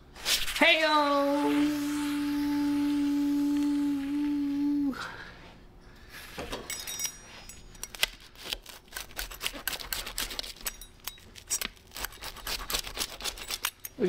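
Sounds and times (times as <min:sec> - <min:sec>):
knife cutting crunchy crust: 0:08.2 - 0:10.6.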